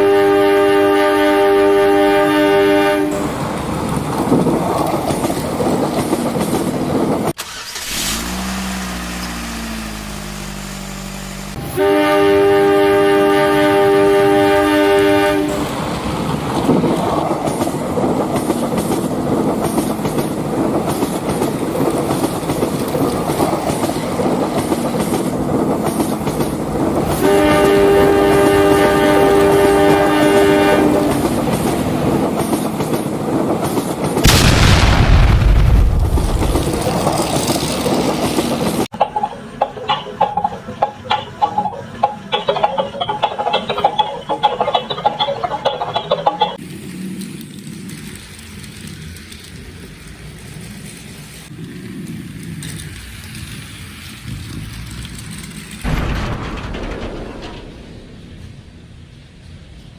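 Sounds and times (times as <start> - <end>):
train horn blasts: 0.0 - 3.3, 11.6 - 15.7, 27.1 - 31.3
rumbling clatter of running train: 0.0 - 8.4, 9.1 - 59.9.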